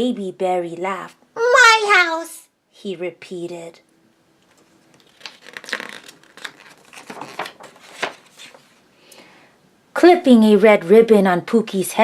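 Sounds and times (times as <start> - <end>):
paper rustling and crinkling: 4.4 - 8.8.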